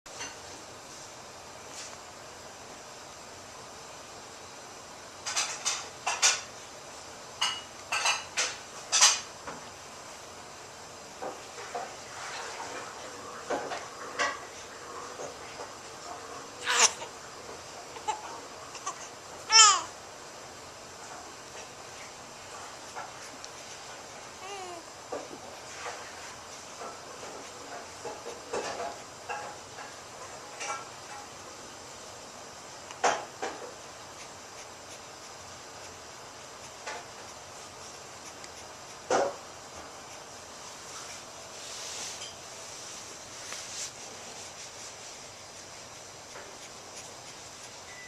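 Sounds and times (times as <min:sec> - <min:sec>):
baby babbling: 0:16.6 - 0:17.1, 0:18.0 - 0:19.9, 0:24.4 - 0:24.9
baby high-pitched squeal: 0:16.6 - 0:17.1, 0:18.1 - 0:19.9
baby sneezing: 0:16.6 - 0:17.1.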